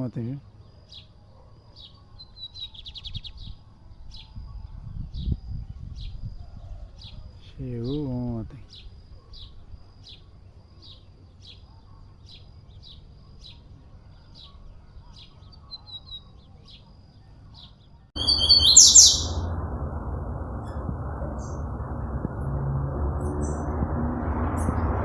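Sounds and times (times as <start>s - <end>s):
songbird chirping: 0.0s - 19.5s
loud bird call: 18.2s - 19.5s
steady rushing noise: 18.6s - 25.0s.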